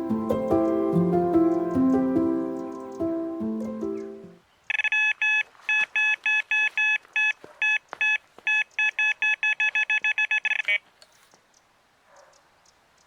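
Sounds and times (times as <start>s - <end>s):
background music: 0.0s - 4.4s
electronic bite alarm beeping: 4.7s - 10.8s.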